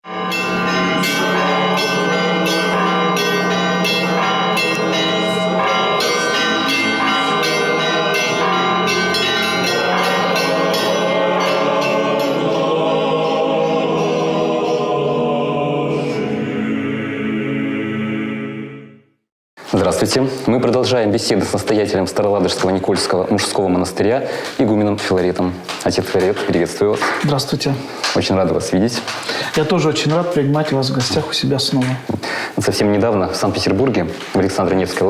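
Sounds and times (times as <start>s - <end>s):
church bells ringing: 0.0s - 15.3s
sustained choir-like chord: 0.1s - 19.1s.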